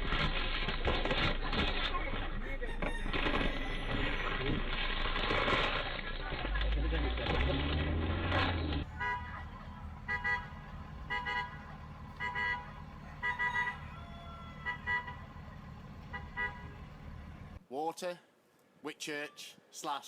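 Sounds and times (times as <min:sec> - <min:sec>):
low engine hum: 0:01.6 - 0:17.6
vehicle horn short beeps: 0:08.9 - 0:13.9, 0:14.6 - 0:15.3, 0:16.1 - 0:16.8.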